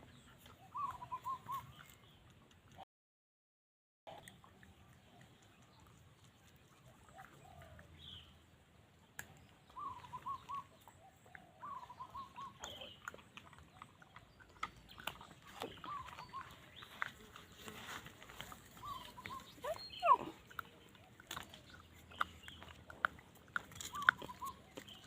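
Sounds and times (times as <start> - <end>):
dog whimpering: 18.8 - 20.5.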